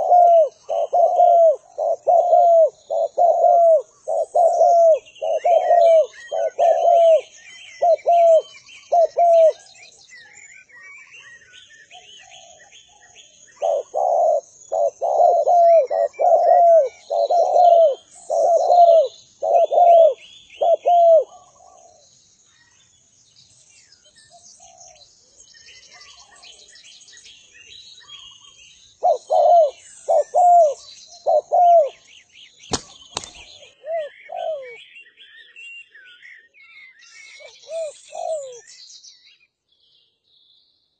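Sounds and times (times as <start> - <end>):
dove cooing: 0.0 - 9.7, 13.6 - 22.0, 29.0 - 32.0, 32.7 - 34.8, 37.4 - 38.6
small birds chirping: 0.0 - 40.9.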